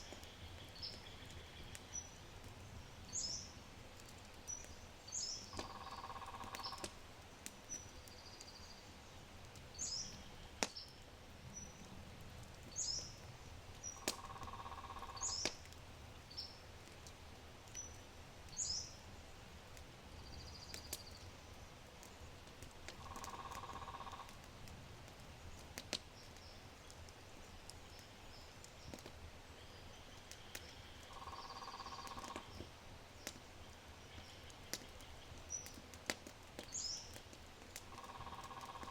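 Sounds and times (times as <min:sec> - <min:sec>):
small birds chirping: 0:00.0 - 0:12.0, 0:12.6 - 0:15.7, 0:17.7 - 0:19.2, 0:25.3 - 0:38.9
fire crackling and popping: 0:00.0 - 0:38.9.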